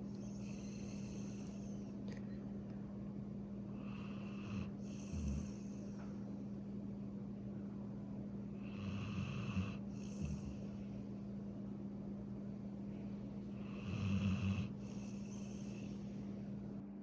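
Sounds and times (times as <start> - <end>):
steady low hum: 0.0 - 17.0
dog snoring: 0.1 - 1.9, 3.7 - 6.0, 8.6 - 10.8, 13.6 - 16.1.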